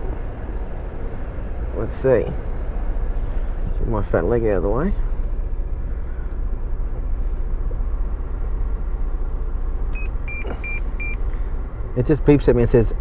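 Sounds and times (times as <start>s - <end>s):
car engine idling: 0.0s - 13.0s
short high beeps from car radio: 9.9s - 11.3s.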